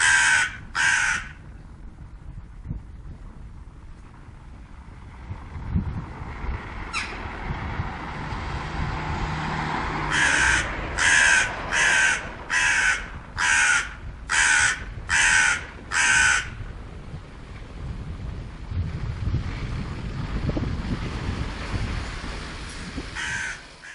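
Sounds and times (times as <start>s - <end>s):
crow cawing: 0.0s - 1.4s, 10.1s - 16.6s, 23.2s - 23.9s
wind noise: 0.0s - 23.9s.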